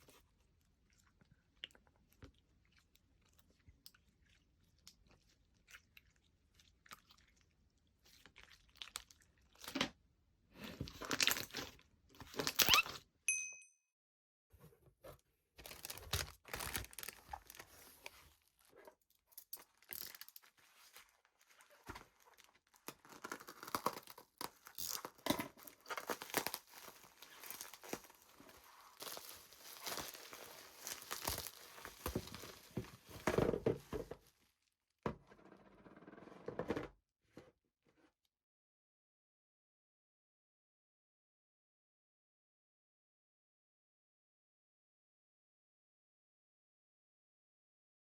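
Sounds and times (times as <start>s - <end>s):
slime crackling and crunching: 15.6s - 18.2s, 19.7s - 33.2s.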